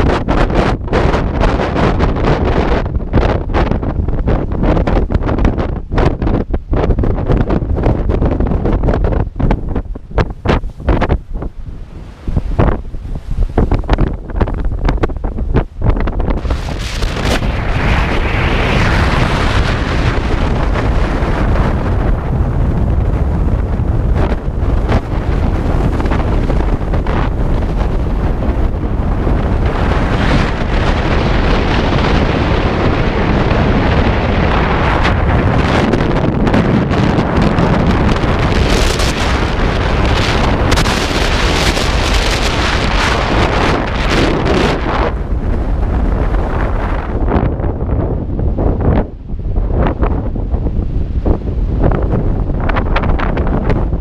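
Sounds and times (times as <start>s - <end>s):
wind buffeting microphone: 0.0s - 54.0s.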